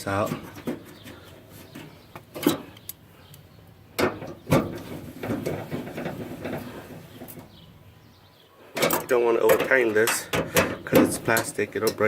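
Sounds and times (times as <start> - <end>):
fasteners clicking and rattling: 0.2 - 3.4, 8.8 - 12.0.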